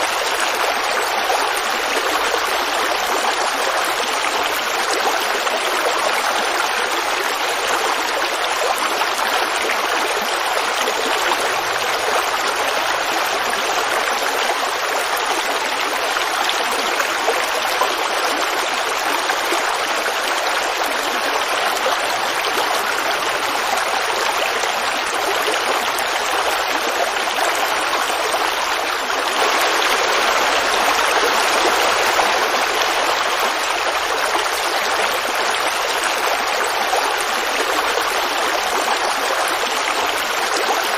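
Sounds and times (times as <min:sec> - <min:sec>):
creek water babbling: 0:00.0 - 0:40.9.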